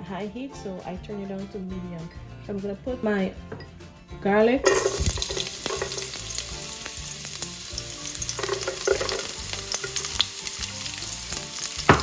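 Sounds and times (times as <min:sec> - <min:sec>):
garlic sizzling in hot oil: 0:04.6 - 0:12.0.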